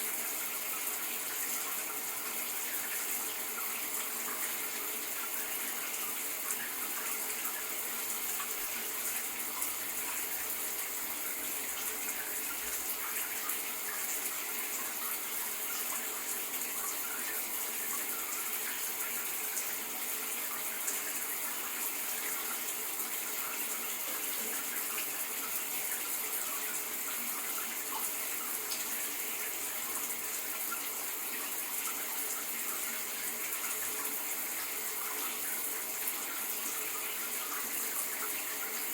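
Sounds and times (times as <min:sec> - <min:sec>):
shower running: 0:00.0 - 0:38.9.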